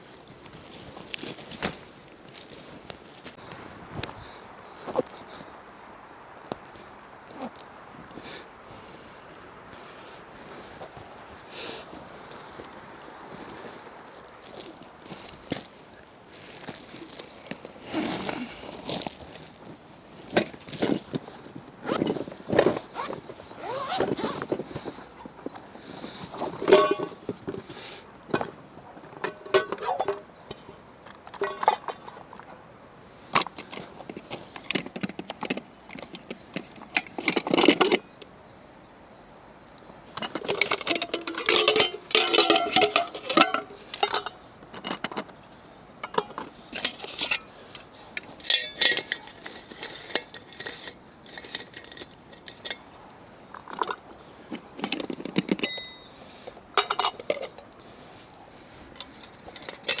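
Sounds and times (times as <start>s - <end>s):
metal cookware clinking: 26.6s - 27.3s, 29.1s - 30.3s, 31.2s - 32.2s, 40.2s - 45.3s, 46.0s - 47.5s, 48.2s - 52.9s, 54.8s - 56.1s, 56.8s - 57.6s, 59.0s - 60.0s.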